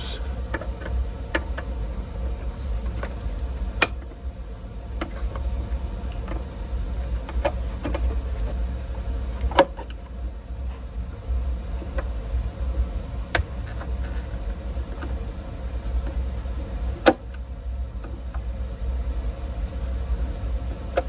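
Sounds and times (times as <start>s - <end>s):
steady low hum: 0.0s - 21.0s
clicks and knocks of radio cabinet: 3.0s - 4.1s, 13.3s - 15.2s.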